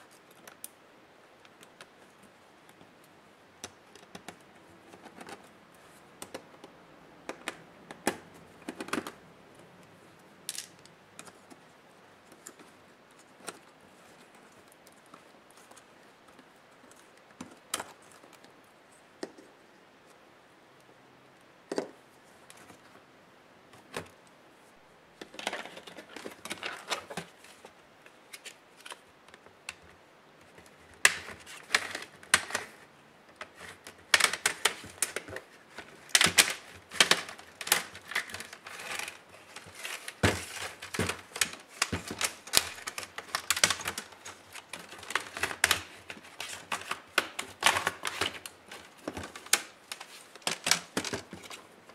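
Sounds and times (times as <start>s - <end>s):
clicks of laptop parts handled: 28.3s - 51.9s.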